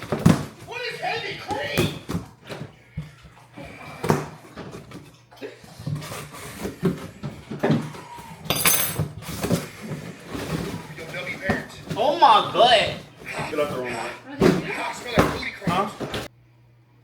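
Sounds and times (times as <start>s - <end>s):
dishes clattering: 6.8s - 16.3s.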